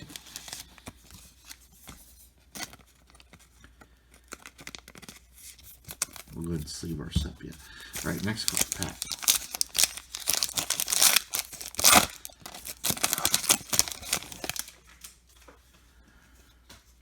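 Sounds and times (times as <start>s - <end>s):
wrapper tearing and crinkling: 0.0s - 1.7s, 4.2s - 6.8s, 7.8s - 15.2s.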